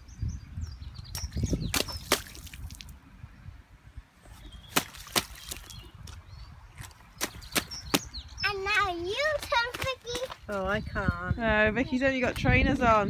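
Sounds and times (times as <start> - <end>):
small birds chirping: 0.0 - 13.0
splashing in puddle: 1.1 - 3.0, 4.3 - 6.2, 6.8 - 8.1, 9.0 - 10.7.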